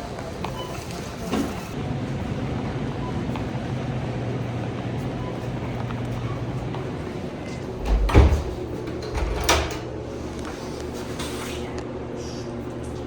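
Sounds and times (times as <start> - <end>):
door shutting with heavy thump: 7.8 - 9.8.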